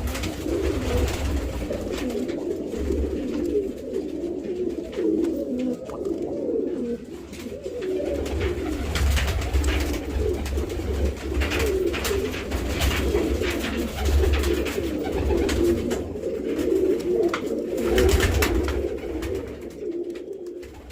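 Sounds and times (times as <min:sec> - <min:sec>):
pigeons cooing: 0:00.0 - 0:20.9.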